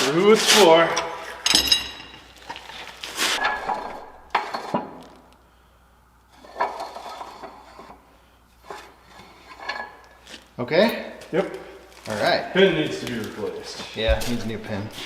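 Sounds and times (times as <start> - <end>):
steel parts clinking and scraping: 0.9 - 4.8.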